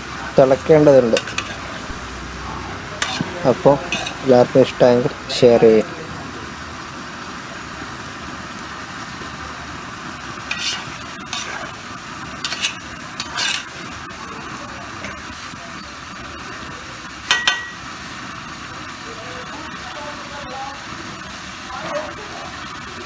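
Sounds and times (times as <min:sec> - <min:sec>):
curry bubbling in a pot: 0:00.0 - 0:23.0
spoon scraping a pot: 0:00.3 - 0:02.0, 0:03.0 - 0:05.2, 0:10.4 - 0:15.4, 0:17.3 - 0:17.9
ringing knocks on a pot: 0:17.3 - 0:17.9.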